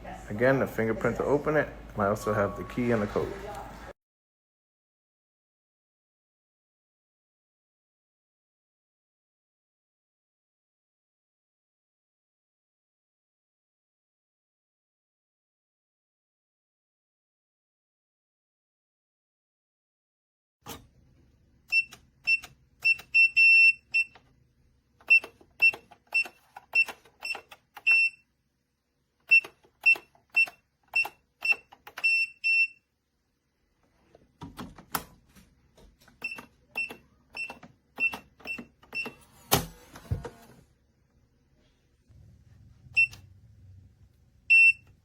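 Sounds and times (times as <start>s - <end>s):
keypad beeping: 21.7s - 24.3s, 25.0s - 28.2s, 29.2s - 32.8s, 36.2s - 39.3s, 43.0s - 43.2s, 44.5s - 44.9s.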